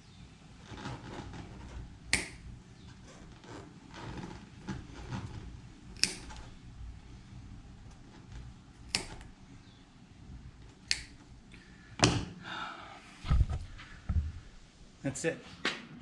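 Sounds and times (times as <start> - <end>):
hand tools clicking: 6.0 - 6.4.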